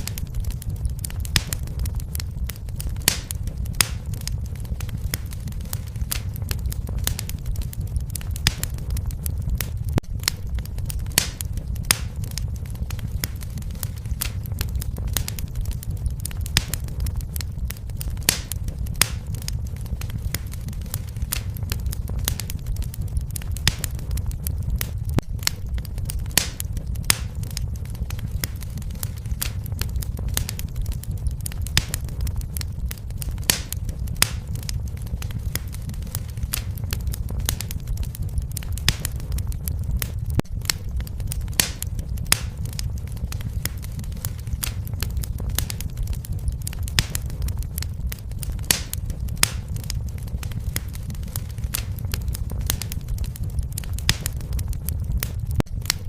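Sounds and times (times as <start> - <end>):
low rumble of flames: 0.0 - 56.0
wood fire crackling and popping: 0.0 - 56.0.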